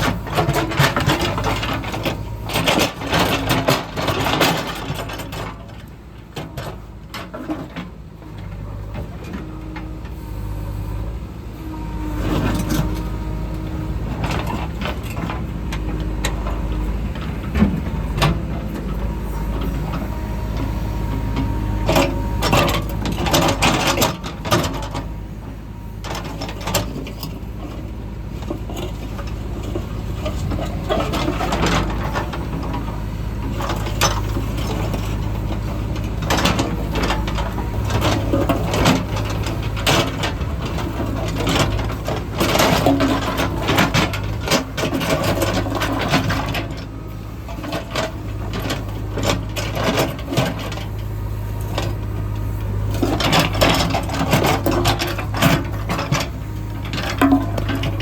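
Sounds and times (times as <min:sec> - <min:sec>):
machinery clanks and knocks: 0:00.0 - 0:10.2, 0:12.2 - 0:58.0
diesel engine running: 0:00.0 - 0:58.0.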